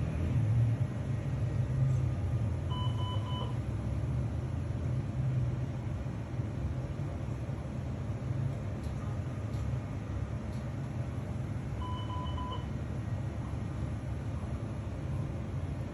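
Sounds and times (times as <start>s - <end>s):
short electronic beeps: 2.7s - 3.6s, 11.8s - 12.7s.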